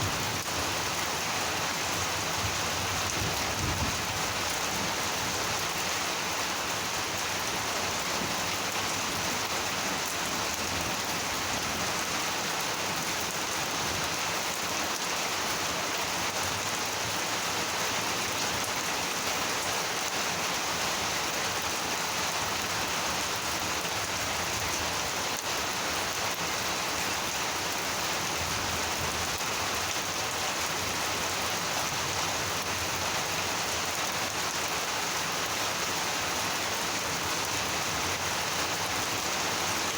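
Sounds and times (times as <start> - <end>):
heavy rain hissing on ground: 0.0 - 39.9.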